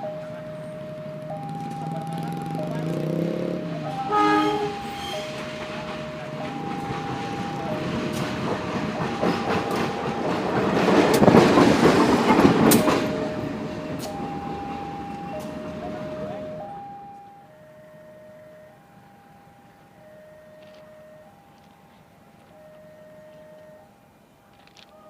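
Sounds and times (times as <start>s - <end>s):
two-tone electronic warning signal: 0.0s - 11.3s, 12.4s - 21.7s, 22.4s - 24.0s
train rumble and wheel clatter: 0.0s - 18.0s, 18.7s - 25.0s
train horn blast: 3.0s - 5.4s.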